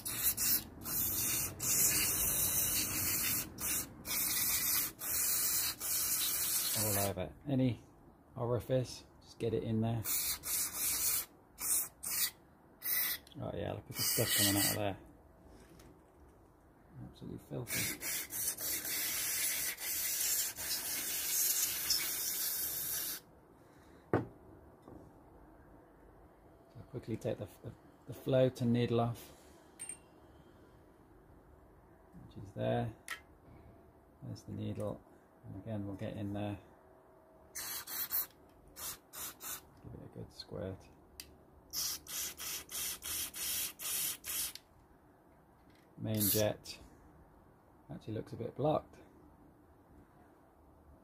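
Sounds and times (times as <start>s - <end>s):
spray can hissing spurts: 0.0s - 7.0s, 10.0s - 13.2s, 17.7s - 23.2s, 37.6s - 39.6s, 41.7s - 44.6s, 46.2s - 46.4s.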